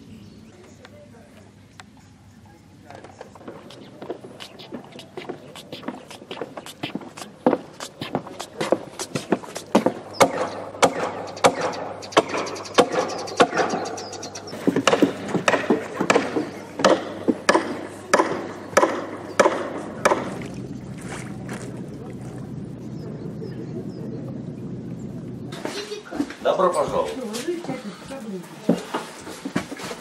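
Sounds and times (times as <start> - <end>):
steady low hum: 1.6 - 28.2
knocks on wooden planks: 14.6 - 20.4.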